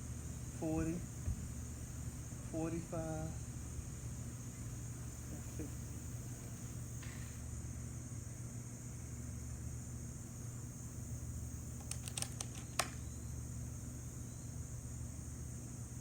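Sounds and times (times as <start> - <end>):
insects chirring: 0.0 - 16.0
sharp clicks: 11.8 - 13.0.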